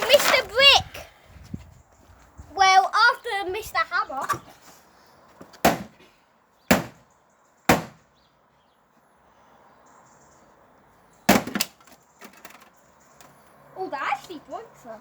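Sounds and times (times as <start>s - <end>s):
rattle of small knocks: 11.3s - 13.3s.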